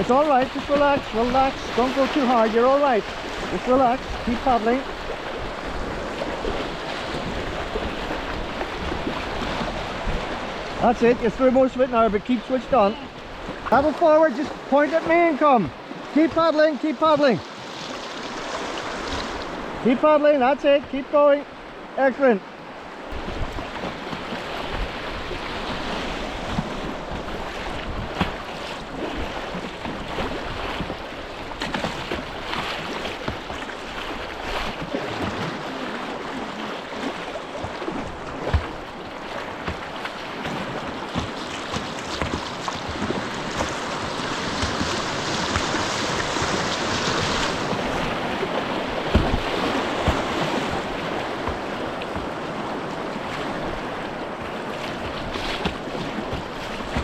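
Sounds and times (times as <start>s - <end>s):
white-water river rushing: 0.0s - 57.0s
wind buffeting microphone: 23.0s - 36.4s, 40.4s - 57.0s
sharp knocks or splashes: 23.1s - 53.8s, 54.4s - 57.0s.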